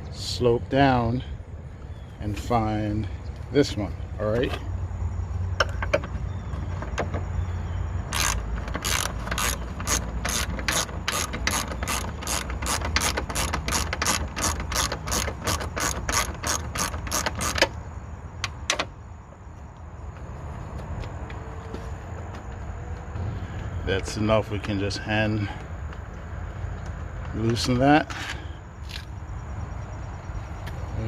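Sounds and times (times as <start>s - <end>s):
ratchet wrench clicking: 8.1s - 17.8s.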